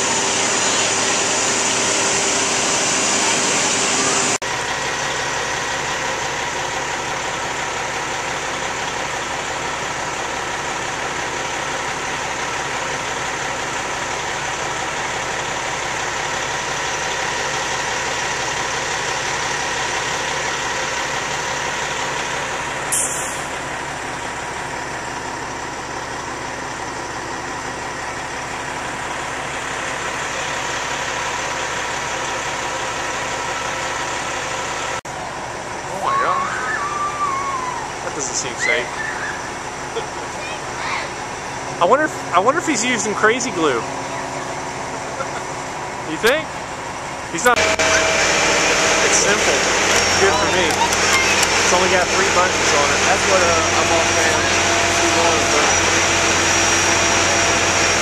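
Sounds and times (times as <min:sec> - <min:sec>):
crane engine running: 0:00.0 - 0:58.0
sharp high-pitched noise: 0:22.9 - 0:23.7, 0:47.6 - 0:58.0.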